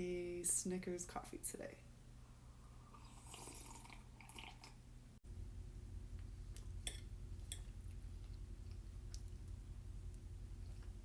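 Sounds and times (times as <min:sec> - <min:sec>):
person chewing with mouth clicks: 0:06.6 - 0:11.0.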